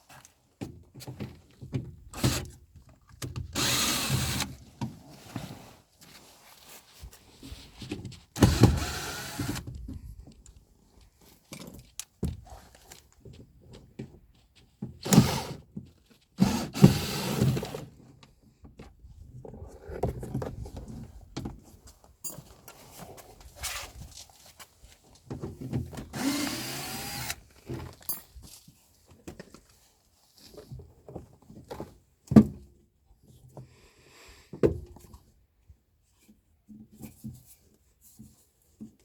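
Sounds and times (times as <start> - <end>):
cordless drill motor running: 3.6 - 4.6, 8.4 - 9.6, 26.2 - 27.4.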